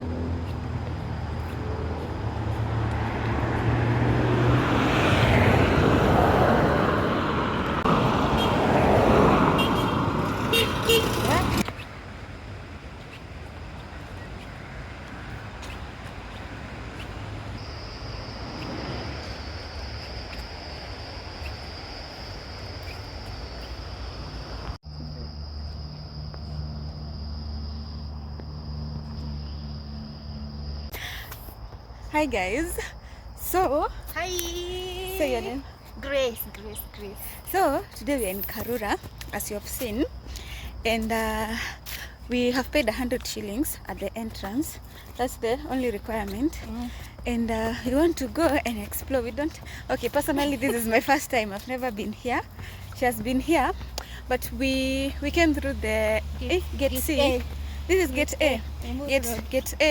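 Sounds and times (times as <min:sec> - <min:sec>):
passing motor vehicles: 0:00.0 - 0:59.9
insects trilling: 0:15.1 - 0:59.9.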